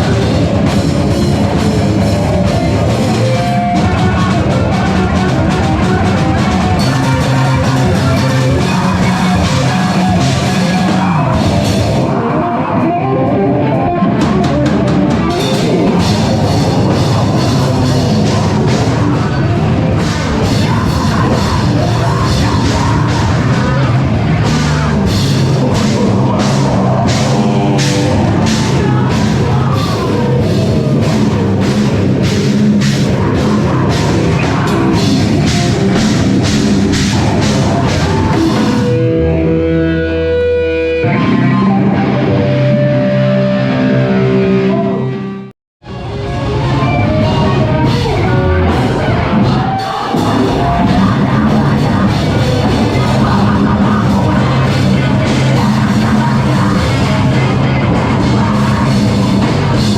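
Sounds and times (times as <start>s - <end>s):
pounding drums and cymbals: 0.0s - 12.1s, 15.2s - 39.0s
distorted guitar: 0.0s - 59.9s
heavy rock band playing: 0.0s - 59.9s.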